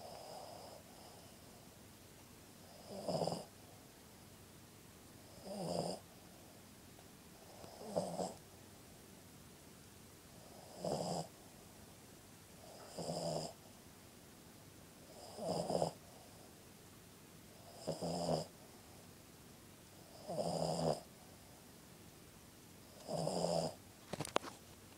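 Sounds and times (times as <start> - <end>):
dog snoring: 0.0 - 1.5, 2.6 - 3.5, 5.2 - 6.0, 7.4 - 8.4, 10.4 - 11.3, 12.6 - 13.6, 15.1 - 16.4, 17.6 - 18.5, 20.0 - 21.1, 22.9 - 23.8.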